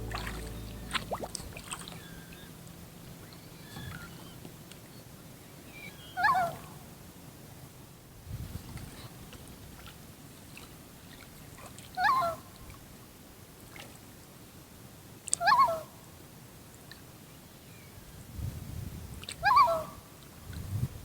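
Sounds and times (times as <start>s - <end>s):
quiet lake ambience: 0.0s - 2.4s, 9.3s - 14.5s.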